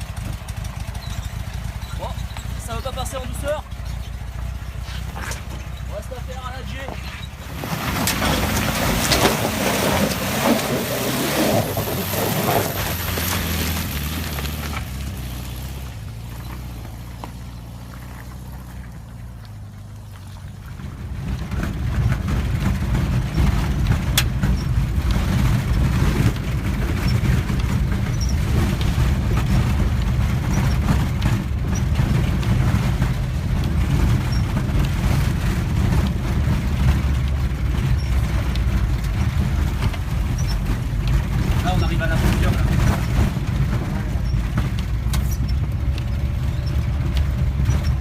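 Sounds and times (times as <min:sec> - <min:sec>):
engine humming: 0:00.0 - 0:48.0
rough low engine rumble: 0:00.0 - 0:48.0.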